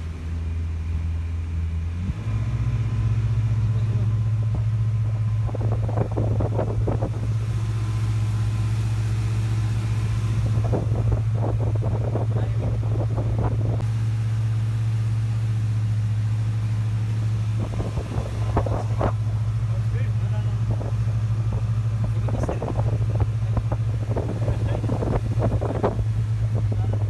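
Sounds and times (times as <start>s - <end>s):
jet boat engine humming: 0.0s - 27.0s.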